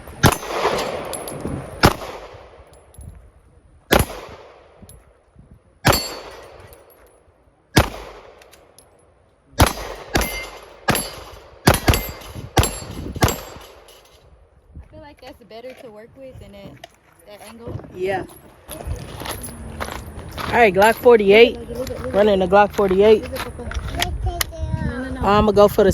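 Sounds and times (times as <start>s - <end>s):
pistol shots: 0.2s - 2.8s, 3.9s - 4.9s, 5.8s - 6.9s, 7.7s - 8.8s, 9.6s - 14.0s
metallic clang of steel targets: 0.2s - 3.1s, 5.8s - 7.1s, 9.6s - 14.3s.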